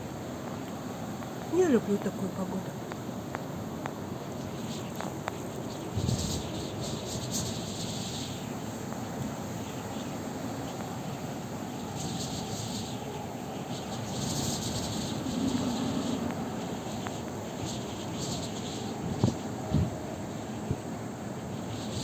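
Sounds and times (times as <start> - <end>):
high hiss of gusts and snow: 0.0 - 22.0
blizzard wind blowing: 10.2 - 22.0.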